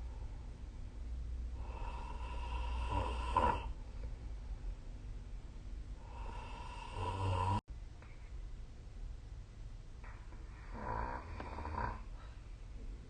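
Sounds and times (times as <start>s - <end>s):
person snoring: 1.6s - 3.8s, 6.0s - 7.6s, 10.6s - 12.1s.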